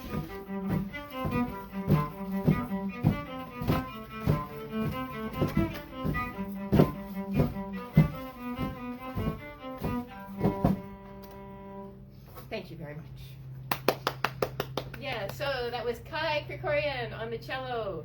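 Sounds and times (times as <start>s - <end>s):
solo cello playing: 0.0s - 12.1s.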